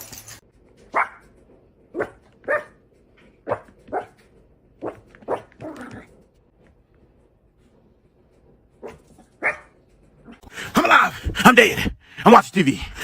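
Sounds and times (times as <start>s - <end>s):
dog barking: 0.9s - 1.2s, 1.9s - 2.8s, 3.4s - 4.2s, 4.8s - 5.8s, 8.8s - 9.8s.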